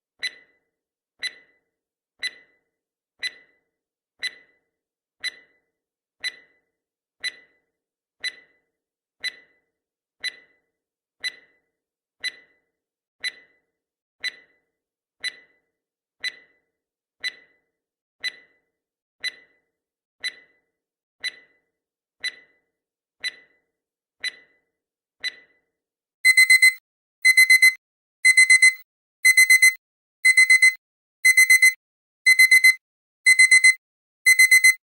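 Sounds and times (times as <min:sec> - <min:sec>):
clock ticking: 0:03.2 - 0:03.5, 0:04.2 - 0:04.5, 0:05.2 - 0:05.5, 0:06.2 - 0:06.5, 0:07.2 - 0:07.5, 0:08.2 - 0:08.5, 0:09.2 - 0:09.5, 0:10.2 - 0:10.5, 0:11.2 - 0:11.5, 0:12.2 - 0:12.5, 0:13.2 - 0:13.5, 0:14.2 - 0:14.5, 0:15.2 - 0:15.5, 0:16.2 - 0:16.5, 0:17.2 - 0:17.5, 0:18.2 - 0:18.5, 0:19.2 - 0:19.5, 0:20.2 - 0:20.5, 0:21.2 - 0:21.5, 0:22.2 - 0:22.5, 0:23.2 - 0:23.5, 0:24.2 - 0:24.5, 0:25.2 - 0:25.5, 0:26.2 - 0:34.8
rapid beeping alarm: 0:26.2 - 0:34.8.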